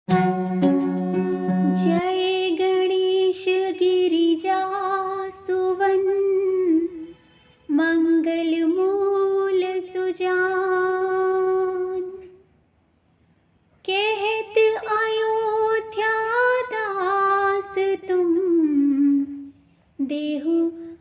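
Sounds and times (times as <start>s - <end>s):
low sustained instrumental note: 0.1s - 2.1s
woman singing a devotional hymn: 1.8s - 7.1s, 7.7s - 12.3s, 13.9s - 21.0s.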